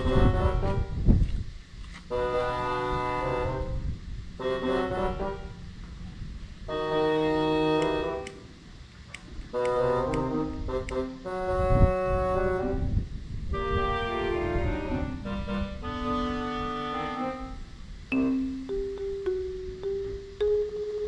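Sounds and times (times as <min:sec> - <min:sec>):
organ-like keyboard chords: 0:04.4 - 0:05.8, 0:06.7 - 0:08.6, 0:09.5 - 0:12.8, 0:13.6 - 0:21.0.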